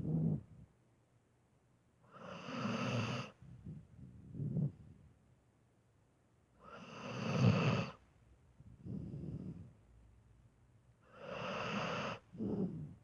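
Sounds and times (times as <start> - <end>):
dog snoring: 0.0 - 0.6, 2.1 - 4.9, 6.6 - 8.0, 8.8 - 9.7, 11.0 - 13.0.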